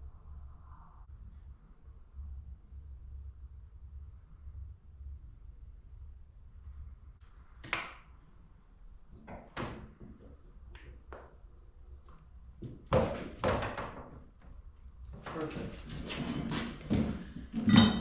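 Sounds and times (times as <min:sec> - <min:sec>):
hard objects clattering on workbench: 0:15.8 - 0:18.0.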